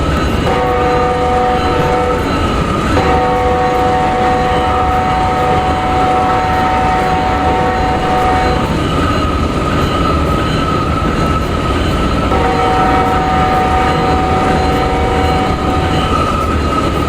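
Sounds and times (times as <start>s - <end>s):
rumble of passing train: 0.0s - 17.0s
locomotive horn chord: 0.4s - 8.7s, 12.3s - 16.0s.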